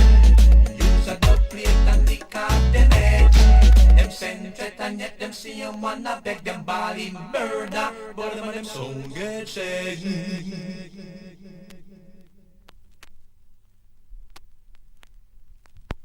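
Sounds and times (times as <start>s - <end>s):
person chanting: 0.0s - 12.3s.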